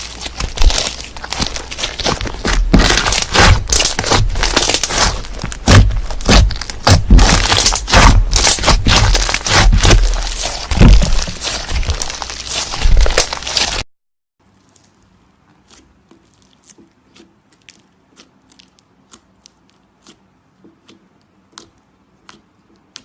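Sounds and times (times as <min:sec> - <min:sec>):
slime crackling and crunching: 0:00.0 - 0:13.9.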